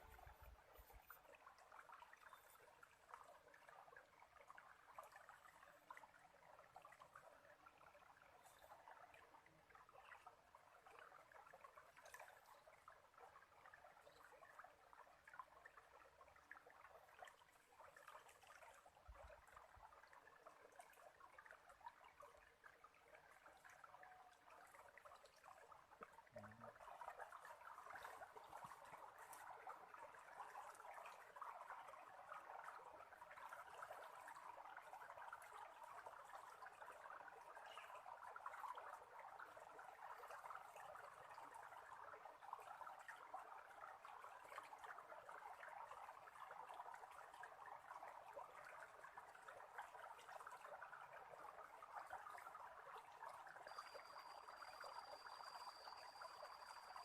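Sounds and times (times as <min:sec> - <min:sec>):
small stream trickling: 0:00.0 - 0:57.0.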